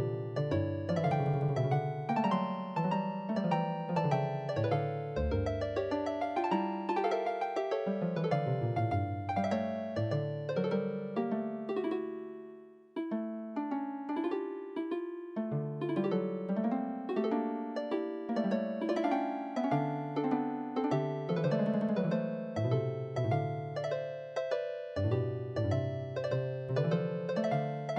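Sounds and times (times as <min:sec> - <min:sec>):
piano music: 0:04.1 - 0:06.6.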